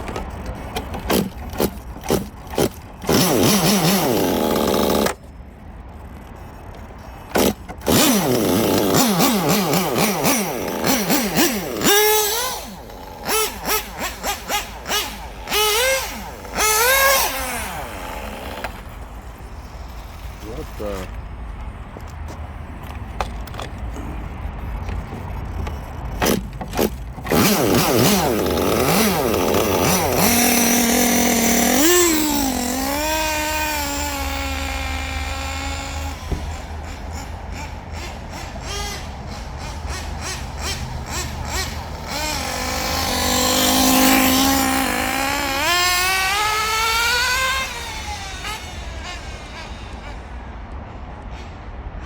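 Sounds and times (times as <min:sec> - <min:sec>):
small engine whining revving: 0:00.0 - 0:21.2, 0:23.6 - 0:51.6.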